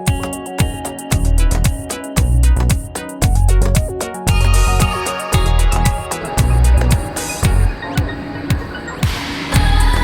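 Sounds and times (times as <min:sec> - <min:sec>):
plucked guitar-like melody: 0:00.0 - 0:08.4
drum hits: 0:00.1 - 0:09.9
bass line: 0:01.1 - 0:07.8, 0:09.6 - 0:10.0.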